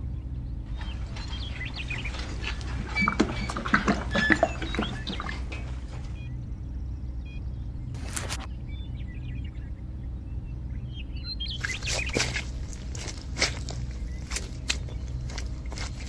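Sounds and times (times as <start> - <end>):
birds chirping: 0.7 - 6.9, 10.6 - 16.0
low engine drone: 5.7 - 16.0
rough scraping with sharp clicks: 8.0 - 8.5, 11.6 - 16.0.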